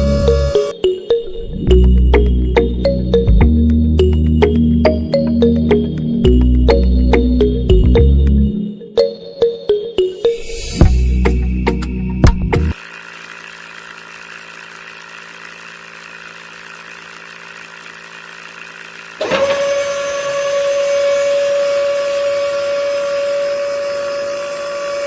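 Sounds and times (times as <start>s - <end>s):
low motor hum: 0.0s - 0.7s, 1.3s - 8.5s, 10.8s - 25.0s
high-pitched motor whine: 0.0s - 0.8s, 12.7s - 25.0s.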